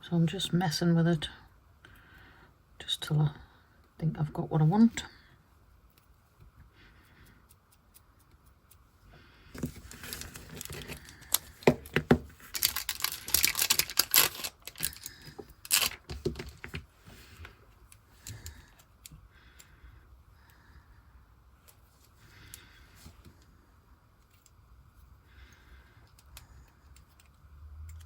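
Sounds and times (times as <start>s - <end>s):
small tools rustling and scraping: 9.6s - 17.6s.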